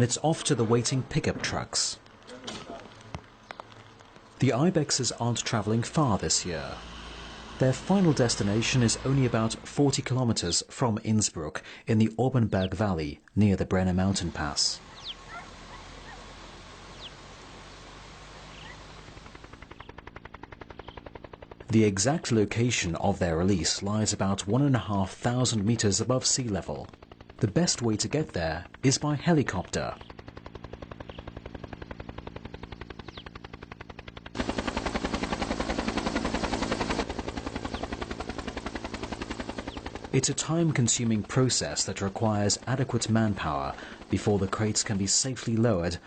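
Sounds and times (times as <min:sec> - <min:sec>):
open-air background hiss: 0:00.0 - 0:25.9
helicopter rotor chopping: 0:00.0 - 0:46.0
faint bird chirps: 0:14.9 - 0:16.2, 0:33.0 - 0:33.4.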